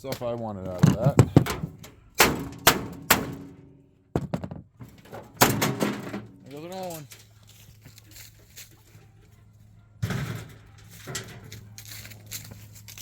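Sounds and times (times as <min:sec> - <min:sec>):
loud metal clunk: 0:00.8 - 0:06.5, 0:10.0 - 0:11.6.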